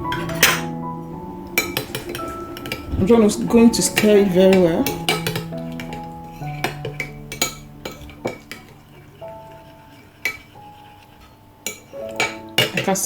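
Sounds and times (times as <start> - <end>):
soft background music: 0.0 - 13.0
utensil clinking against container: 11.2 - 13.0.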